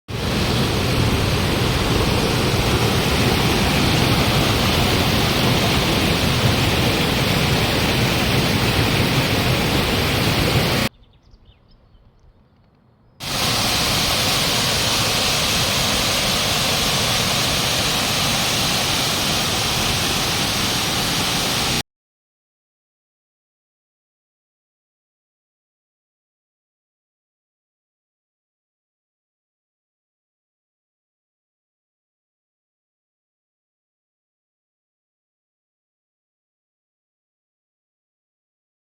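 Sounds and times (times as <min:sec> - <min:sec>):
waterfall roaring: 0:00.1 - 0:10.9, 0:13.2 - 0:21.8.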